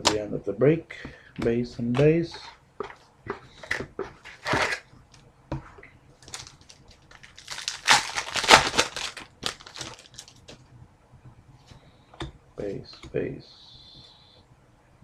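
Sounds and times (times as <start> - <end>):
foil wrapper crinkling and tearing: 6.2 - 10.5
cards rustling: 6.2 - 10.6.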